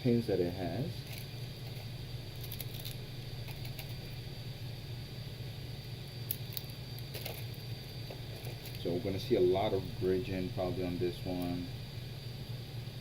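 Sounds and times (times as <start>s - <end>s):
faint high whine: 0.0s - 13.0s
low electrical hum: 0.0s - 13.0s.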